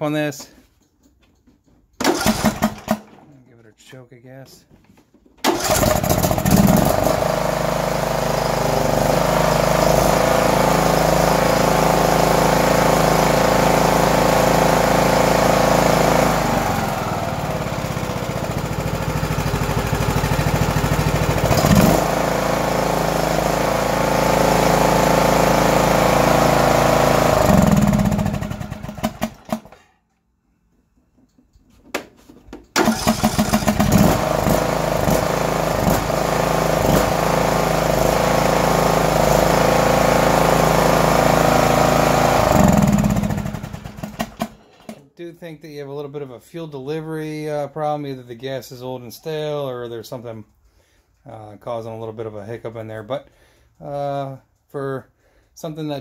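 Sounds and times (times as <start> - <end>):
small engine surging: 5.5 - 29.4, 32.8 - 44.6.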